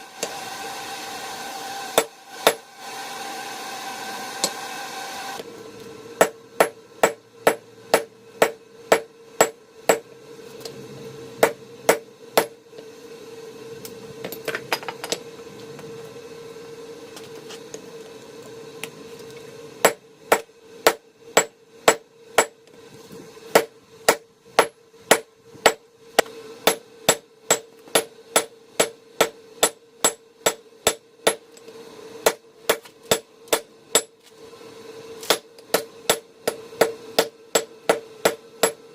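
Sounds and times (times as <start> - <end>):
steady hum: 0.0 - 38.9
hammer striking steel on anvil: 6.2 - 10.1, 11.4 - 12.6, 19.8 - 22.6, 23.5 - 31.5, 32.2 - 34.2, 35.2 - 38.9.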